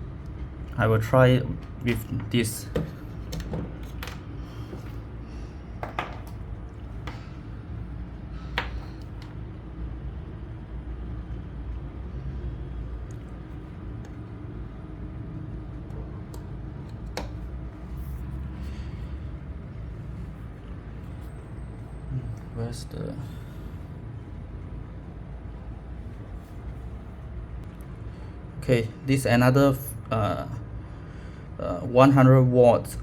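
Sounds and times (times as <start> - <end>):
steady low hum: 0.0 - 33.0
cables and plugs clicking: 15.8 - 17.6.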